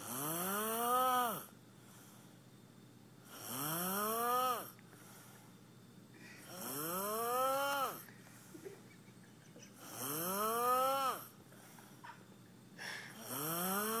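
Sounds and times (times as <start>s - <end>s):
man snoring: 0.0s - 1.5s, 3.3s - 4.8s, 6.4s - 8.0s, 9.8s - 11.4s, 13.1s - 14.0s.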